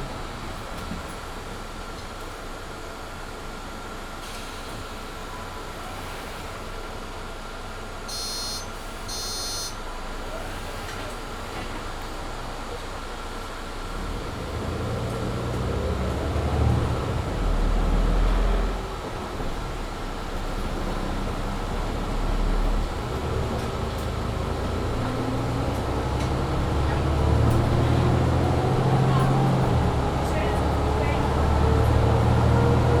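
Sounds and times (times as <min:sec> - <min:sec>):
bus engine accelerating: 0:00.0 - 0:33.0.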